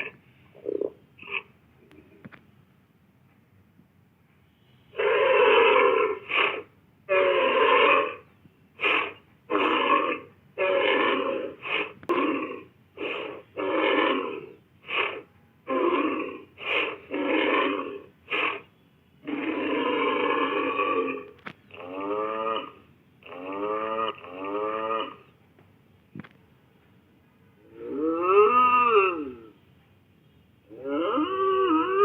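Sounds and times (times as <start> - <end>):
ox grunts and bellows: 0.0 - 1.5, 4.9 - 25.3, 27.6 - 29.6, 30.7 - 32.0.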